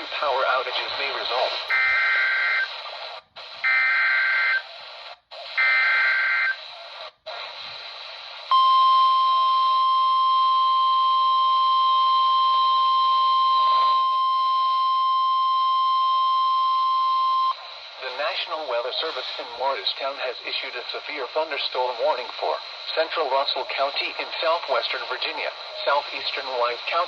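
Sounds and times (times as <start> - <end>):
static hiss: 0.0 - 10.0, 11.2 - 27.0
steady alarm tone: 1.7 - 2.7, 3.6 - 4.6, 5.6 - 6.6.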